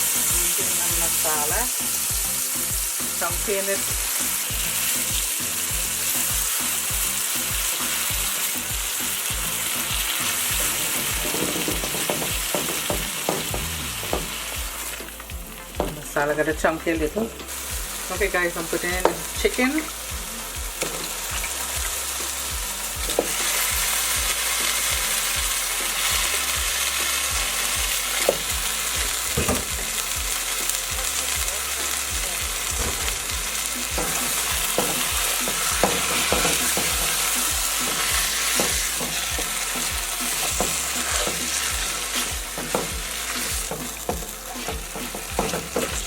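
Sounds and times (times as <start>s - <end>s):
chicken sizzling in hot oil: 0.0s - 46.0s
utensil knocking against pot: 10.7s - 14.3s.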